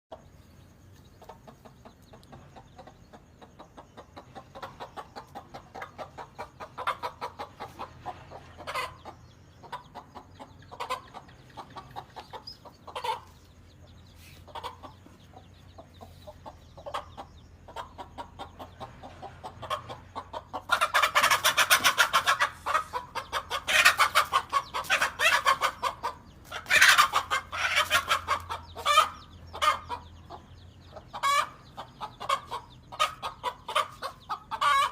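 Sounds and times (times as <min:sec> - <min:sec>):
hen clucking: 0:00.1 - 0:34.9
hen squawking rapidly: 0:20.8 - 0:29.8.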